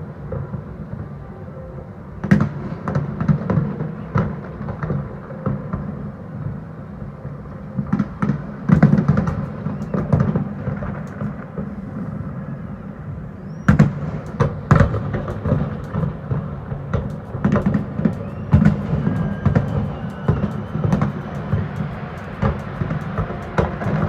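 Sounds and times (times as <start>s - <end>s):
fireworks bangs: 13.7s - 24.0s.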